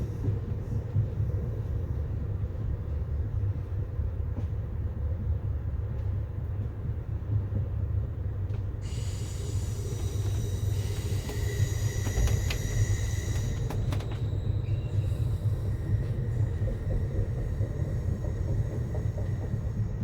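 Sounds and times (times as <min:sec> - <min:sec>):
train rumbling: 0:00.0 - 0:20.0
hiss with high steady tones: 0:08.8 - 0:13.6.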